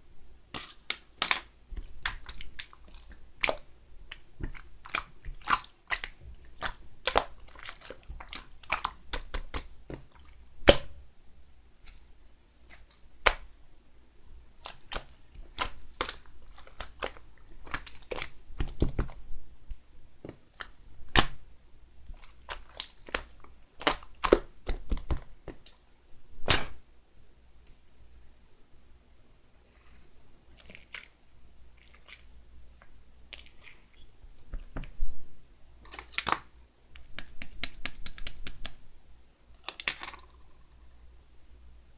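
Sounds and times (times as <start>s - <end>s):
slime clicking and popping: 14.6s - 19.2s, 22.1s - 25.7s, 35.9s - 38.8s.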